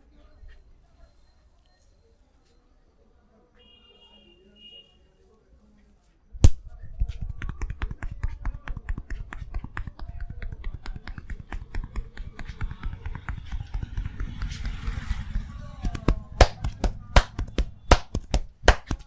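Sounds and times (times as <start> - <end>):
hands tapping and slapping: 6.4 - 15.0, 15.8 - 19.0
sharp snap: 6.4 - 15.2, 15.8 - 19.0.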